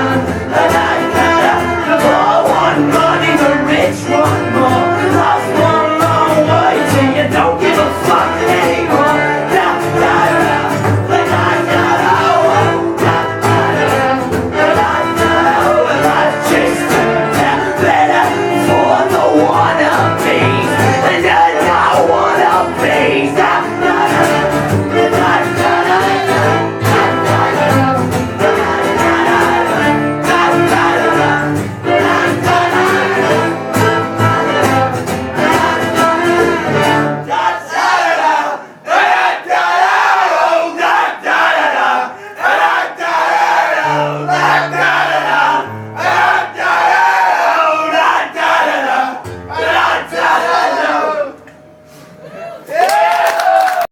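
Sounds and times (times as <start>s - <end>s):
person singing: 0.0s - 37.2s
electric guitars: 0.0s - 37.4s
live band playing: 0.0s - 38.0s.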